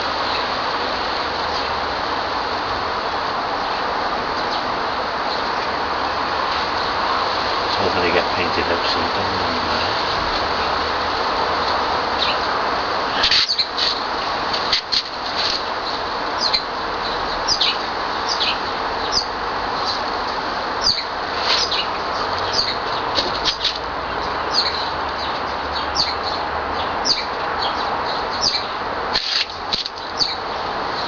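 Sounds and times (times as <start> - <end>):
steady background hiss: 0.0 - 31.0
small birds chirping: 6.5 - 14.1, 14.7 - 20.1, 20.7 - 31.0.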